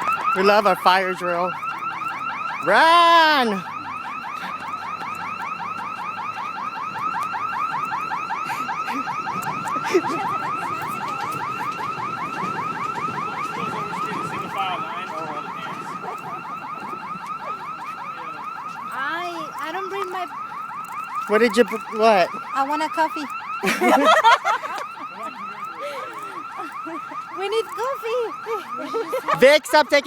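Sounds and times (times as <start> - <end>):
fire alarm sweeping tone: 0.0 - 30.0.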